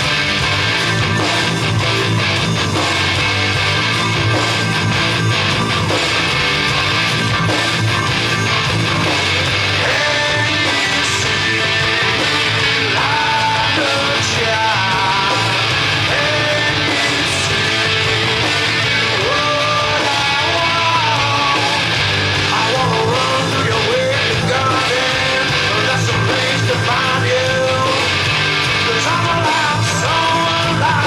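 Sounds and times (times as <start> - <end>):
rock band playing: 0.0 - 31.0
person singing: 9.5 - 28.2, 28.8 - 31.0.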